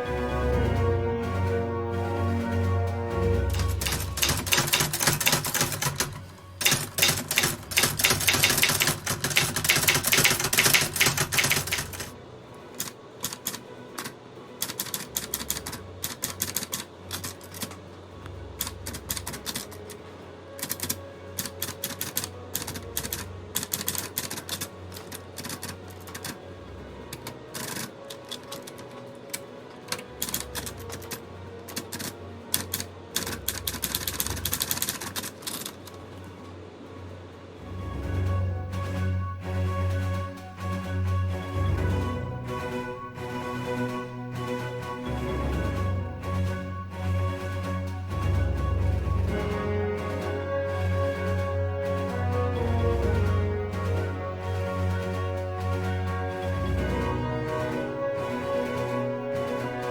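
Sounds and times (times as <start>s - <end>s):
background music: 0.0s - 59.9s
typewriter keys clacking: 3.6s - 12.1s, 18.6s - 19.7s, 20.6s - 26.4s, 29.9s - 35.8s.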